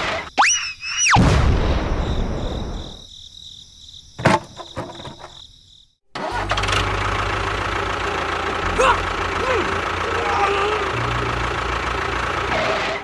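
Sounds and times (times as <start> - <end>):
engine running steadily: 6.2 - 13.0.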